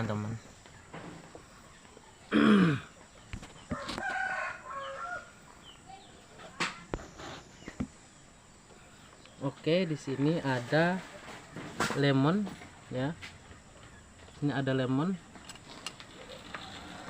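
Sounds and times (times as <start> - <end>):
rooster crowing: 3.7 - 5.5, 16.5 - 17.0.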